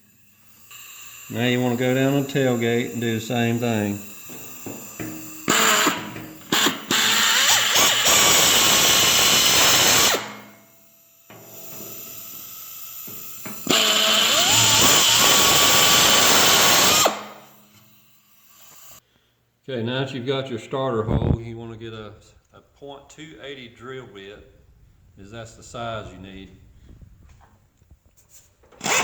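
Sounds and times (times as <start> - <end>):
power drill drilling sheet metal: 0.0 - 19.0, 28.8 - 29.0.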